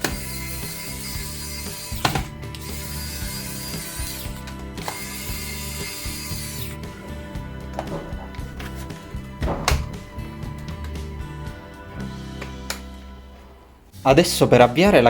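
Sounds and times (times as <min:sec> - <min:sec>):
ratcheting clicks: 0:00.0 - 0:06.8
electric screwdriver whining: 0:00.0 - 0:07.0
background music: 0:00.0 - 0:15.0.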